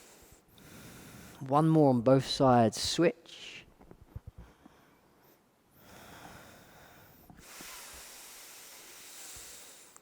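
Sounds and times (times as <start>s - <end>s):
slow breathing through the nose: 0.0s - 1.4s, 4.4s - 10.0s.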